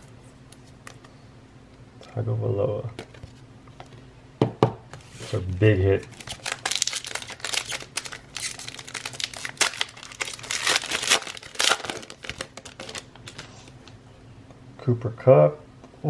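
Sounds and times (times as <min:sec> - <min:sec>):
plastic wrapper crinkling: 0:06.0 - 0:13.9.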